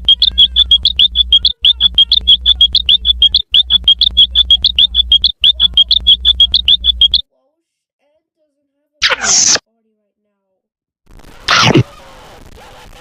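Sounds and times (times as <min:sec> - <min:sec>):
cartoon high chirps: 0:00.0 - 0:07.2, 0:09.0 - 0:09.6, 0:11.5 - 0:11.8.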